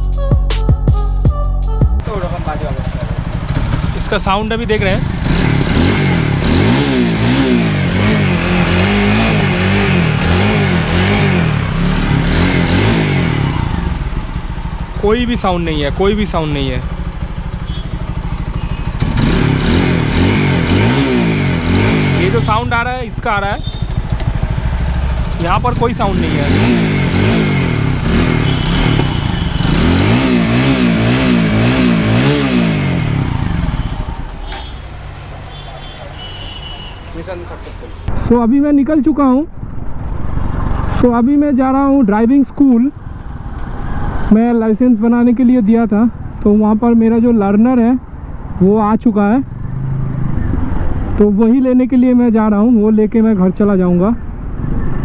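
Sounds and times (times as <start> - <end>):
motorcycle engine revving: 2.0 - 38.2, 49.5 - 51.3.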